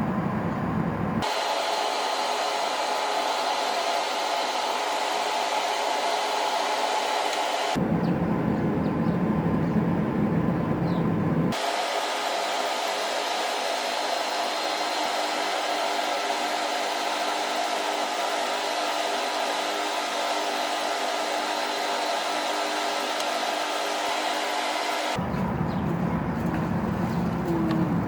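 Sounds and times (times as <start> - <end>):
electric blower running: 1.2 - 7.8, 11.5 - 25.2.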